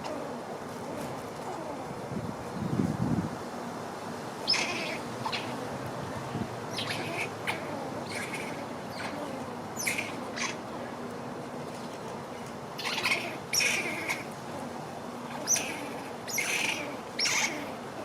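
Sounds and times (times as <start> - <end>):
squirrel chirping alarm calls: 4.4 - 5.6, 6.7 - 10.7, 12.8 - 14.3, 15.3 - 17.8.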